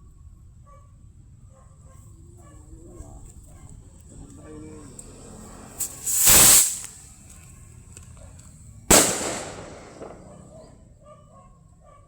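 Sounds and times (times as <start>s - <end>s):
bottle rocket hiss: 5.7s - 7.1s
sharp bang: 8.9s - 10.8s.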